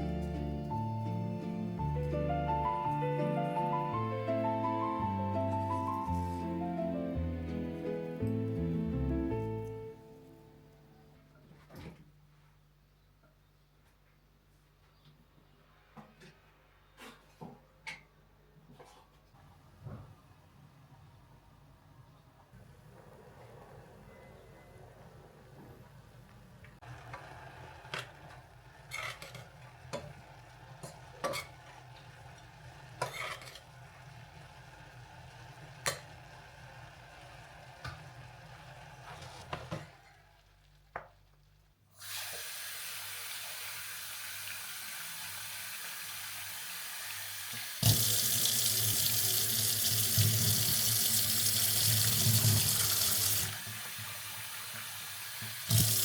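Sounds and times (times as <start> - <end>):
kitchen clicks and knocks: 30.8 - 31.6
tap running into sink: 47.8 - 56.0.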